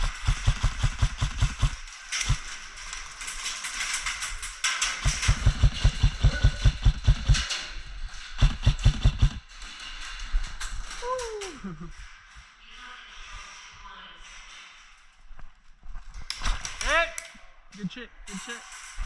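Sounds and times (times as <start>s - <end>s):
running footsteps: 0.0s - 2.6s, 4.9s - 9.6s
jostling gear: 0.0s - 12.5s.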